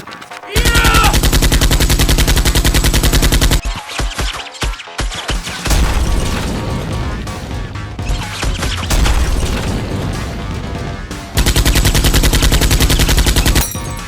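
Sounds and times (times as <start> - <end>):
action background music: 0.0 - 14.0
automatic gunfire: 0.6 - 3.6, 11.4 - 13.8.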